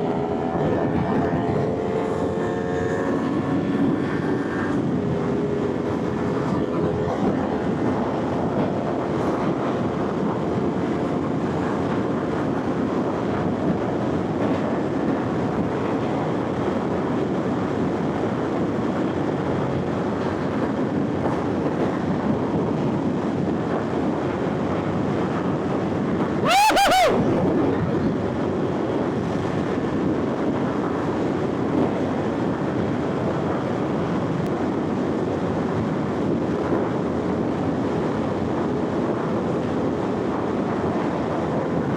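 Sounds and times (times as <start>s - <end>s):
motorcycle engine at speed: 0.0s - 12.4s
wind noise: 0.0s - 41.9s
loud pitched blast: 26.4s - 27.7s.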